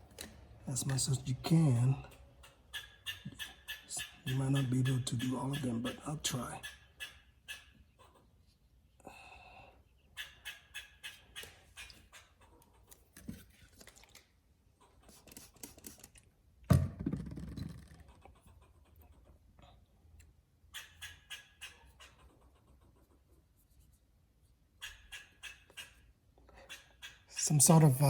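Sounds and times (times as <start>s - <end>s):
squirrel barking: 0.7s - 8.2s, 10.1s - 12.5s, 20.7s - 22.9s, 24.8s - 28.0s.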